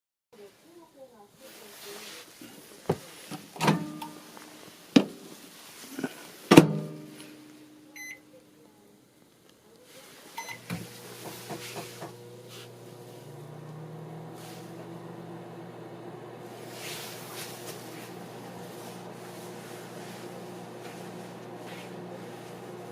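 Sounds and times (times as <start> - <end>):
microwave clunks and knocks: 3.4 - 4.1, 6.5 - 7.1
microwave humming: 3.4 - 5.4, 6.5 - 8.4, 10.4 - 22.9
short beep: 8.0 - 8.2.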